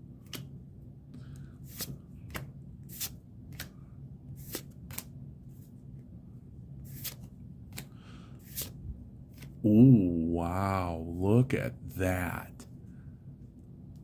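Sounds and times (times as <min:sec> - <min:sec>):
trading cards swishing: 0:01.6 - 0:03.8, 0:04.4 - 0:05.8, 0:06.8 - 0:09.6.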